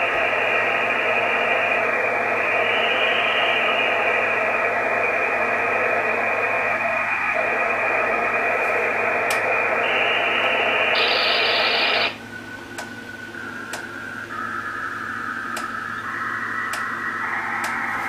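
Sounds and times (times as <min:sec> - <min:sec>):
radio receiver hiss: 0:00.0 - 0:18.0.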